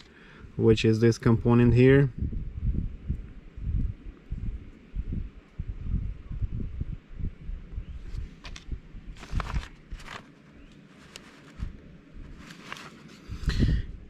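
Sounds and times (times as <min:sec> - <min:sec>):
rustling of handled wires: 0:08.0 - 0:13.5.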